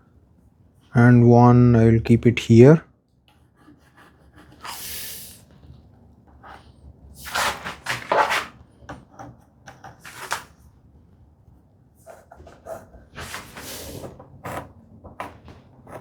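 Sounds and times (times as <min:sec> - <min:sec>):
wood scraping on bench: 0:07.2 - 0:10.6, 0:12.0 - 0:16.0.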